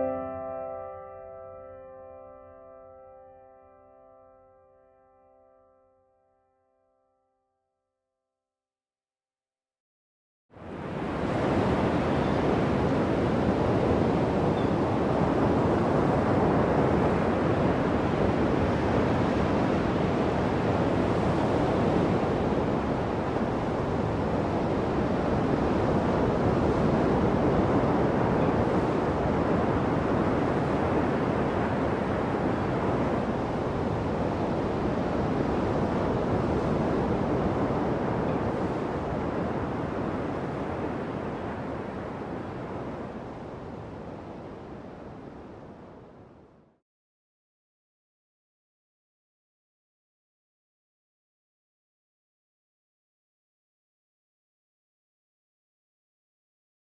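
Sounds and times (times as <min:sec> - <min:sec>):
wind: 0:10.5 - 0:46.6
ocean surf: 0:10.6 - 0:46.1.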